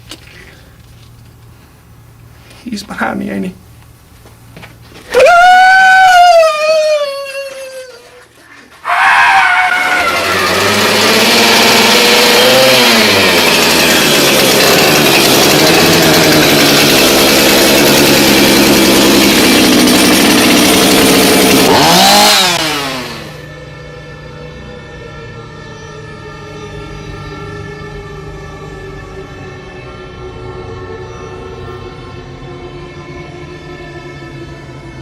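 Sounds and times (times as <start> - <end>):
chainsaw engine revving: 8.9 - 23.5
spooky music: 21.8 - 35.0.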